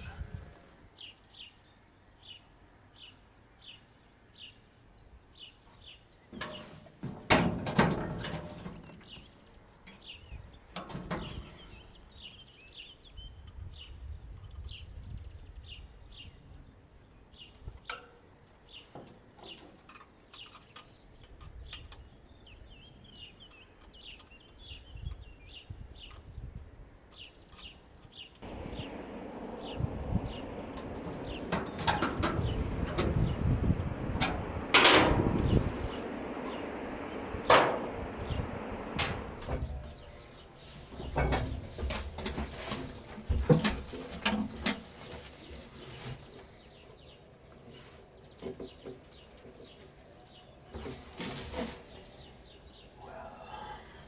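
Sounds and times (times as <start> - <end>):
bird chirping: 27.1 - 41.4
clatter of knocks: 28.4 - 39.8.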